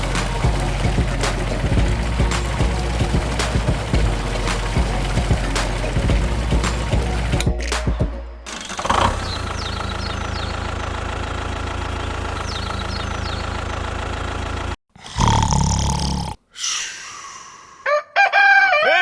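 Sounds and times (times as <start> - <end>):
engine idling: 0.0 - 7.5, 8.5 - 14.8.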